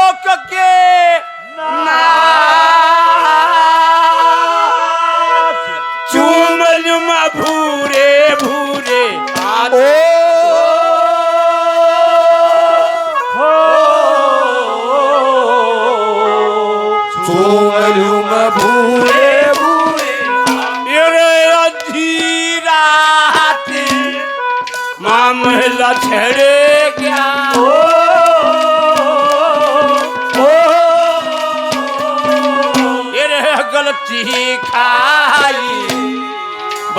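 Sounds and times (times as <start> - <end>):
instrumental accompaniment: 0.0 - 36.9
man singing long held notes: 1.2 - 36.9
drum strokes: 6.1 - 10.5, 17.3 - 36.9.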